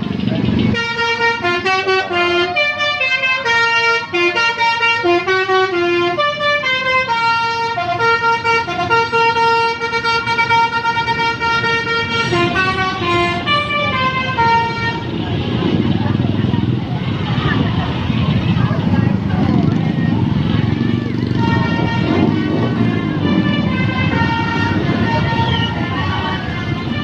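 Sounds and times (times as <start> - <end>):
musical air horn playing tune: 0.7 - 15.2, 20.8 - 27.0.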